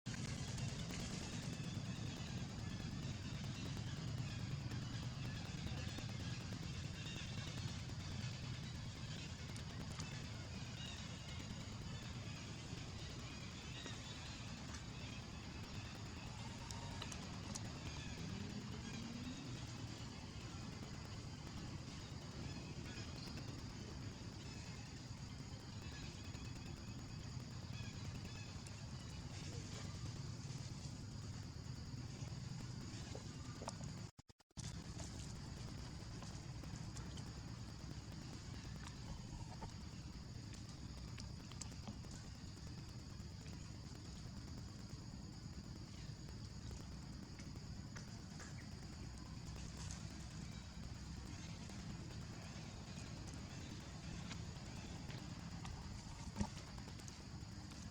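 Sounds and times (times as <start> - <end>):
high-pitched insect drone: 0.1 - 34.0, 34.8 - 57.9.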